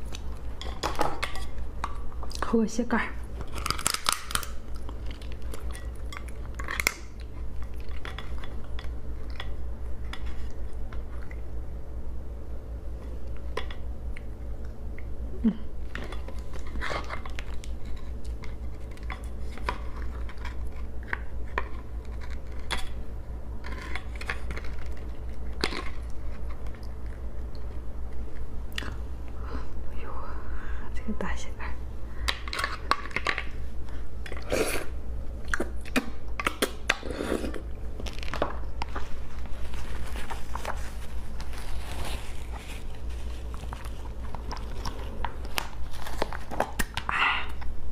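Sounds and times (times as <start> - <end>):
steady low hum: 0.0 - 47.9
crab shell cracking: 3.4 - 9.6
chewing: 3.4 - 11.5, 23.6 - 29.0.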